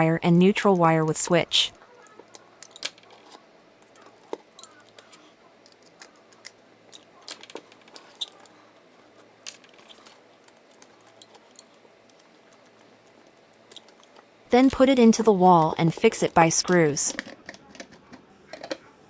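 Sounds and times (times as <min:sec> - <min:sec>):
faint steady hum: 0:00.0 - 0:19.0
small clicks and scrapes of wiring: 0:02.0 - 0:14.8.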